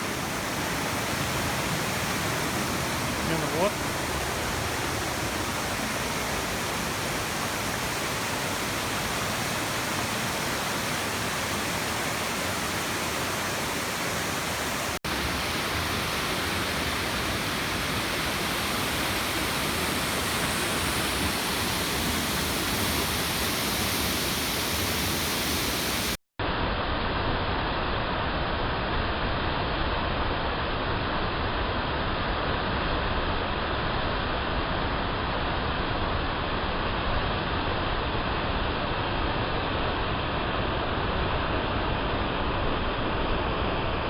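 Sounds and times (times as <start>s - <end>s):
waterfall rushing: 0.0s - 26.2s.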